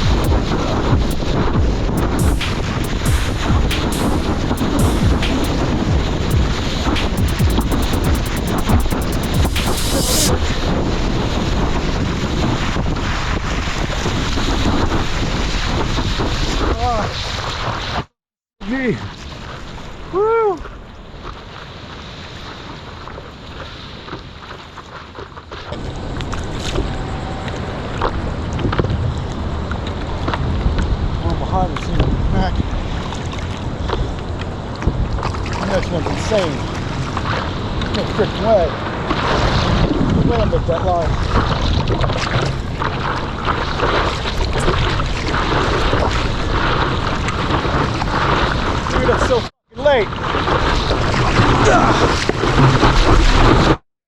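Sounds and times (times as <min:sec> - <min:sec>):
wind buffeting microphone: 0:00.0 - 0:07.9, 0:09.2 - 0:17.0, 0:25.8 - 0:49.4
ocean surf: 0:00.0 - 0:15.8, 0:32.5 - 0:53.8.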